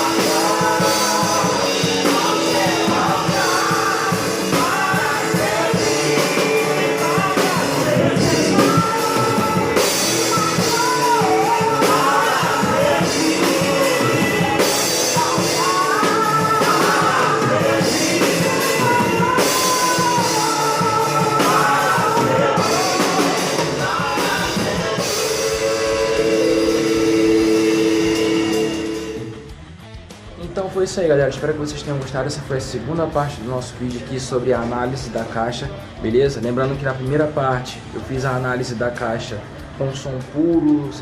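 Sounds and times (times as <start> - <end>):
voices singing: 0.0 - 29.6
drum kit: 0.0 - 41.0
guitar: 0.0 - 41.0.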